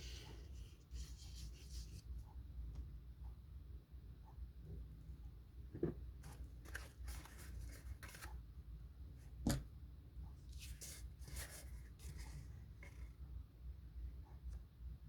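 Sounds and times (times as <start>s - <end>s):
knock: 5.8s - 6.0s
paper rustling and scraping: 6.2s - 8.4s, 10.5s - 13.2s.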